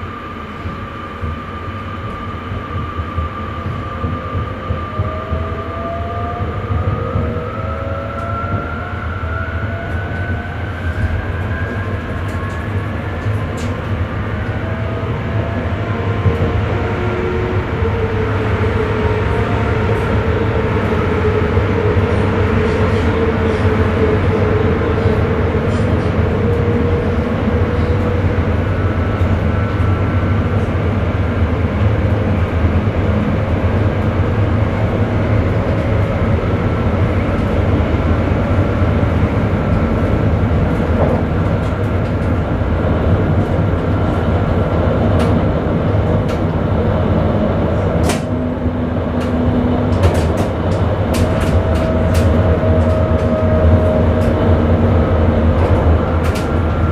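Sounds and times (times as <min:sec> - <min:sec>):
train wheels rumbling on rail: 0:00.0 - 0:56.9.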